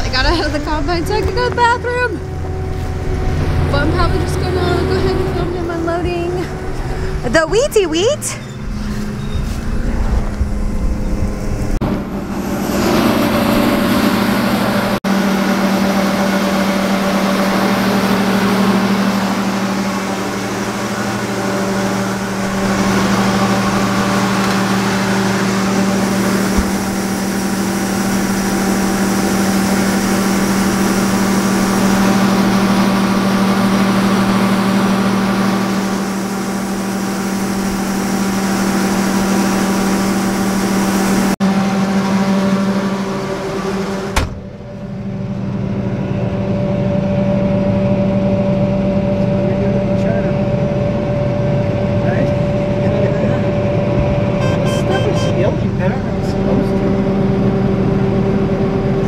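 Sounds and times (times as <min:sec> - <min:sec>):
combine diesel engine running: 0:00.0 - 0:59.0
unloading auger and grain rushing: 0:15.8 - 0:41.2.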